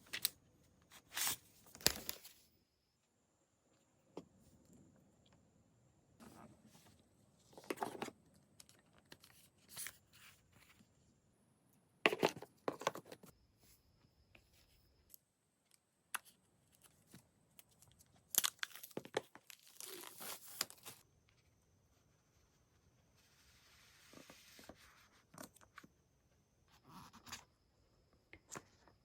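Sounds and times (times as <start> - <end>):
packaging tearing and crinkling: 18.3 - 21.0.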